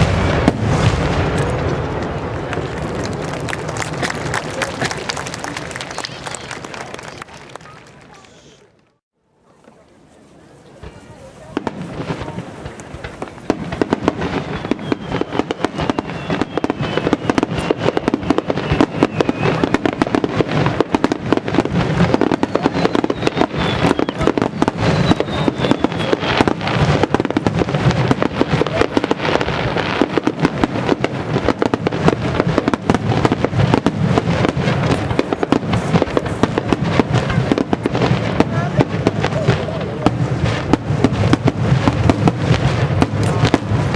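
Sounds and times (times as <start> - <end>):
fireworks bursts and crackles: 0.0 - 43.9
whistling fireworks shells: 13.8 - 20.1, 22.0 - 26.7.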